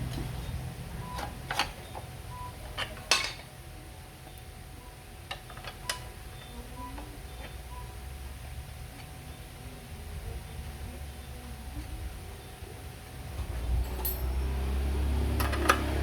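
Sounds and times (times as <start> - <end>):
metal tools clinking: 13.8 - 14.5.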